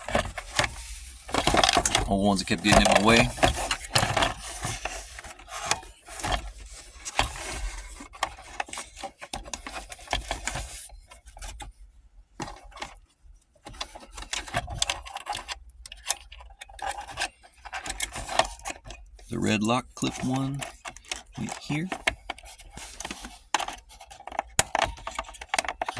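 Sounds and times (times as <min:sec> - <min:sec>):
hands handling plastic trim: 0:00.0 - 0:10.6, 0:13.7 - 0:25.9.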